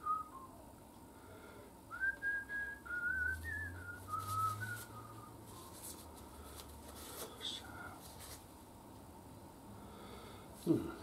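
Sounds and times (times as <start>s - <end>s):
person whistling a tune: 0.0s - 0.6s, 1.9s - 5.7s.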